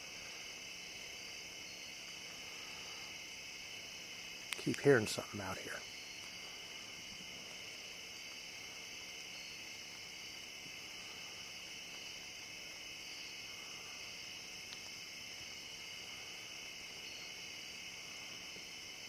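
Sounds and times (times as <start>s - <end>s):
insects trilling: 0.0s - 19.0s
faint click: 4.5s - 4.8s, 14.7s - 14.9s.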